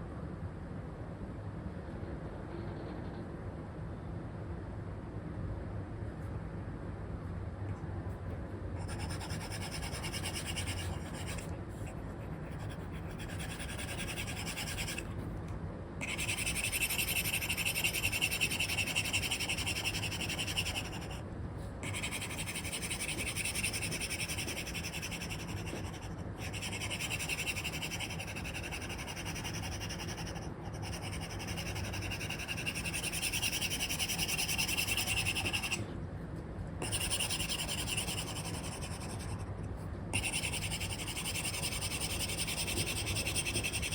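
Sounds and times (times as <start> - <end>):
stylus scratching on screen: 8.8 - 15.3, 16.0 - 21.2, 21.8 - 35.9, 36.8 - 39.5, 40.2 - 43.9.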